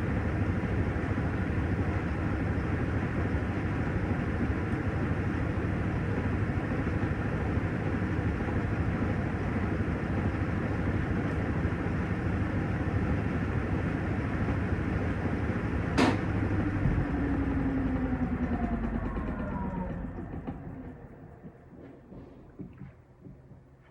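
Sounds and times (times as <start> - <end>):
washing machine rumbling: 0.0 - 23.9
low hum falling in pitch: 16.0 - 21.6.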